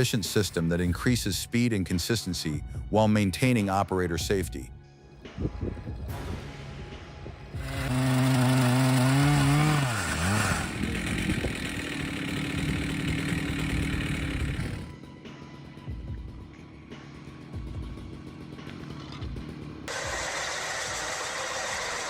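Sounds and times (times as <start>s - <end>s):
chainsaw engine running hard: 7.6s - 22.0s.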